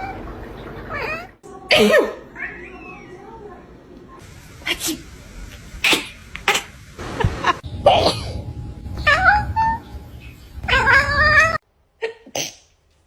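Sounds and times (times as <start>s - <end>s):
person coughing: 1.7s - 2.2s, 7.8s - 8.4s.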